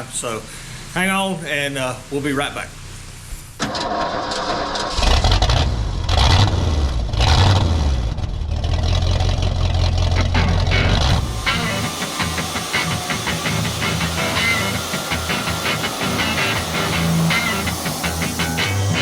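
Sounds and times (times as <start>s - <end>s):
engine droning and revving: 4.8s - 19.0s.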